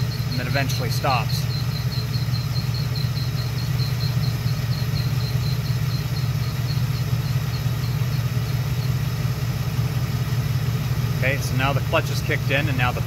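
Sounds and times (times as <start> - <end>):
high squeak from engine fan: 0.0 - 9.6
car engine idling: 0.0 - 13.0.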